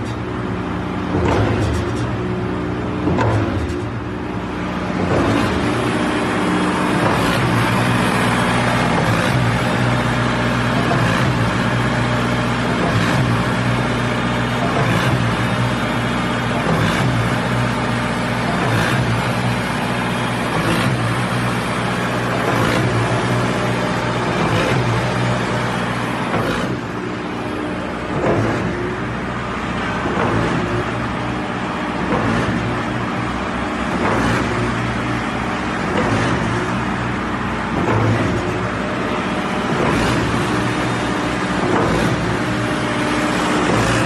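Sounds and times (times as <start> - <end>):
diesel engine running: 0.0 - 44.0
pump piston knock: 1.1 - 2.4, 3.0 - 4.2, 26.0 - 29.0, 29.8 - 31.0, 37.7 - 38.8.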